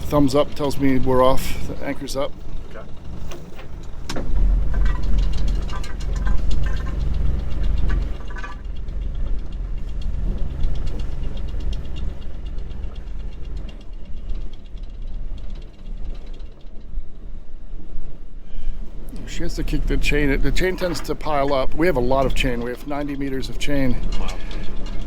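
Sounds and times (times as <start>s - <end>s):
low motor hum: 0.0s - 25.0s
anchor chain links clicking: 19.0s - 25.0s.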